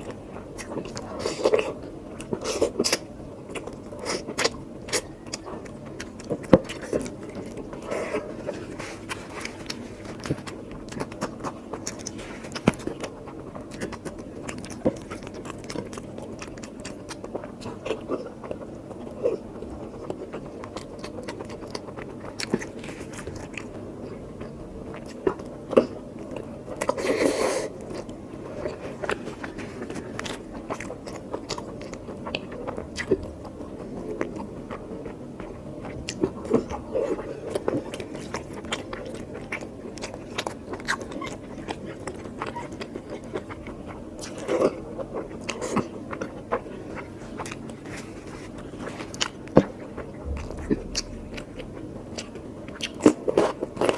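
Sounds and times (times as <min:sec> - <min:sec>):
person chewing: 0:49.1 - 0:53.9.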